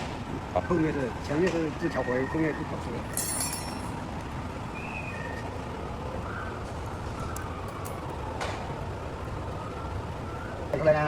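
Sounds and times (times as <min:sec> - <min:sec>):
ringing metallic clink: 0:03.1 - 0:04.0.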